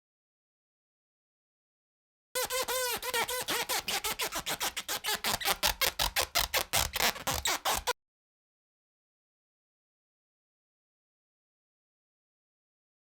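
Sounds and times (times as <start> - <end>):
short squeaks: 2.4 - 8.0.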